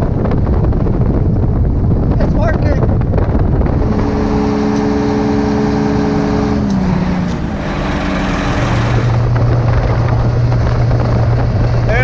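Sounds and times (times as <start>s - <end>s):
vehicle engine running: 3.4s - 12.0s.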